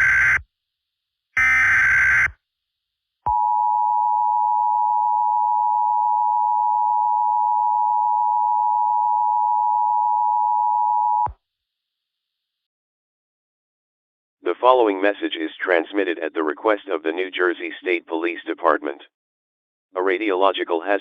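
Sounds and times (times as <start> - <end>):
two-tone electronic alarm: 0.0 - 0.4, 1.4 - 2.3.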